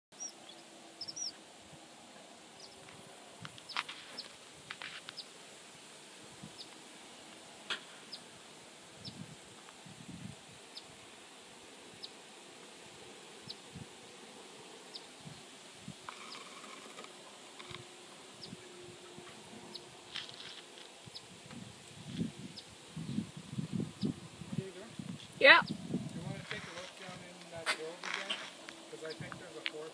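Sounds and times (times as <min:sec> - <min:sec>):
bird chicks peeping: 0:00.2 - 0:01.4, 0:12.0 - 0:12.2, 0:16.1 - 0:17.0.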